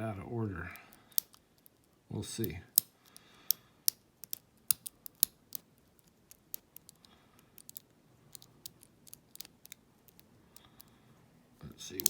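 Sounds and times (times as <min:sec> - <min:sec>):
lock pick clicking in padlock: 0:01.1 - 0:01.8, 0:02.4 - 0:07.0, 0:07.6 - 0:10.9.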